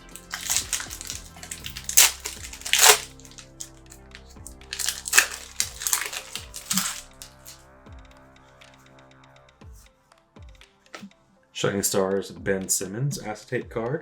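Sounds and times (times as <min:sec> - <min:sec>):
plastic wrapper tearing and crinkling: 0:00.0 - 0:07.6
background music: 0:00.0 - 0:14.0.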